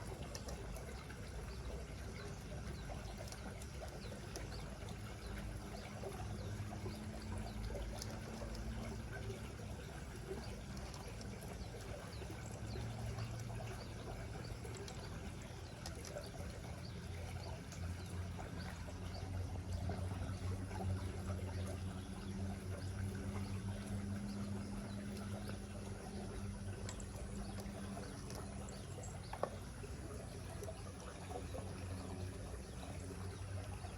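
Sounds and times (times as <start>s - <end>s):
low hum: 0.0s - 33.9s.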